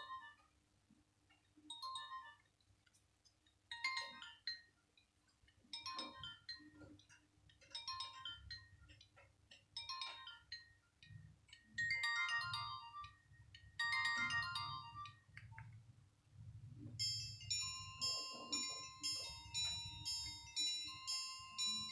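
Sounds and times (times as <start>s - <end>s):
mobile phone ringtone melody: 3.7s - 4.7s, 5.7s - 6.8s, 7.7s - 8.8s, 9.8s - 10.9s, 11.7s - 15.3s, 17.0s - 21.9s.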